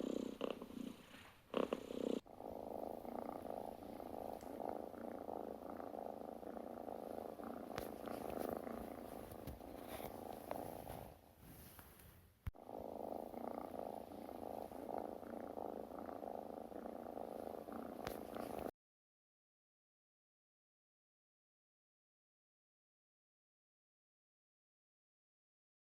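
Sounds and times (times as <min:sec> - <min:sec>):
cat purring: 0:00.0 - 0:18.7.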